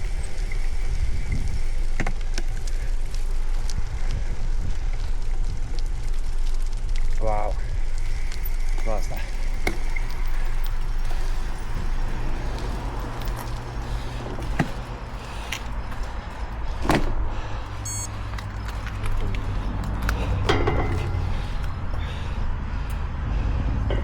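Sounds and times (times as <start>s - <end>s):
wind on microphone: 0.0s - 6.4s
bicycle rolling noise: 0.0s - 24.0s.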